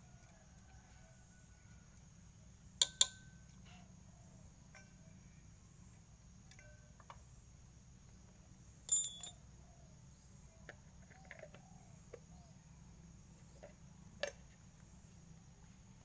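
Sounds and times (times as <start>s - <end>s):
low steady hum: 0.0s - 16.0s
metallic clink: 8.9s - 9.4s.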